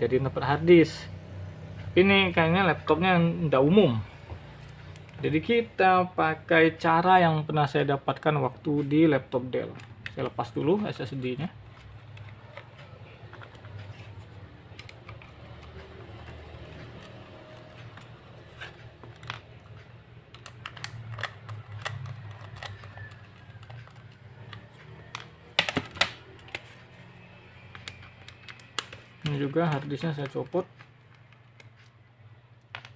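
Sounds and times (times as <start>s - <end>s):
laptop parts clicking and tapping: 4.3s - 5.5s, 8.1s - 32.9s.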